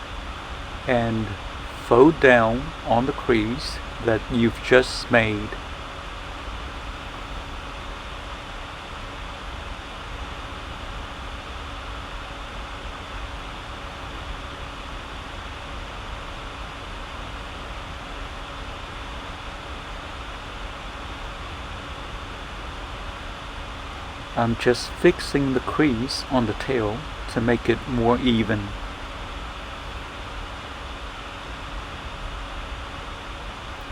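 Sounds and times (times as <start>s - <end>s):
background hiss: 0.0s - 6.0s, 23.9s - 29.8s
faint low hum: 0.0s - 33.9s.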